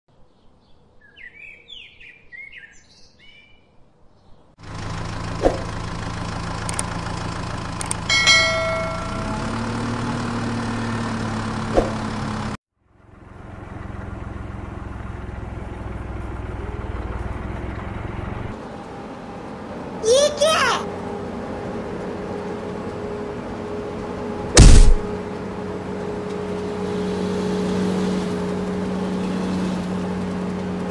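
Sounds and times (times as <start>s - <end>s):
birds chirping: 0.1s - 4.6s
engine-like hum: 4.6s - 30.9s.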